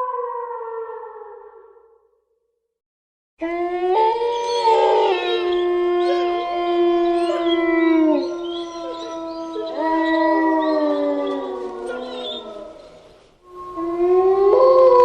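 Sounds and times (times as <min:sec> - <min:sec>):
wolves howling: 0:03.4 - 0:15.0.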